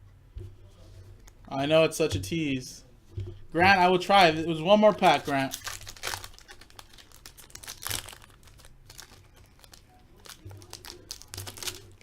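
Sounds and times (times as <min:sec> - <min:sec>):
card pack wrapper crinkling: 0:04.9 - 0:12.0.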